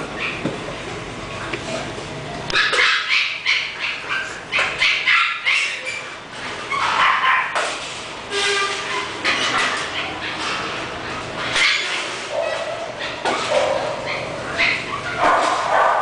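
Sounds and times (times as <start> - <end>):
puppy yipping and barking: 2.5 - 6.1, 6.7 - 7.6, 11.4 - 16.0.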